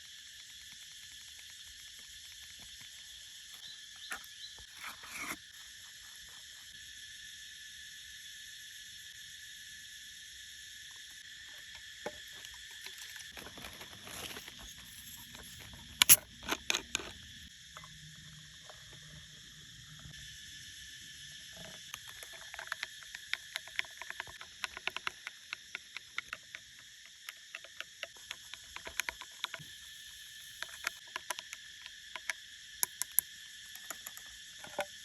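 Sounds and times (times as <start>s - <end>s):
insects chorus: 0.0s - 35.0s.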